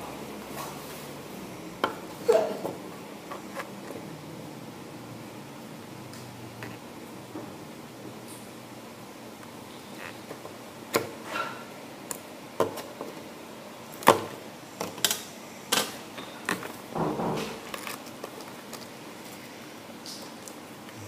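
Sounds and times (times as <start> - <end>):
packaging rustle: 17.4 - 19.5.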